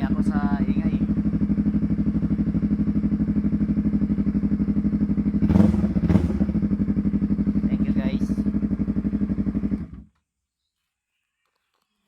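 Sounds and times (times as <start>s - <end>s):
motorcycle engine idling: 0.0s - 10.1s
engine revving bursts: 5.4s - 6.9s.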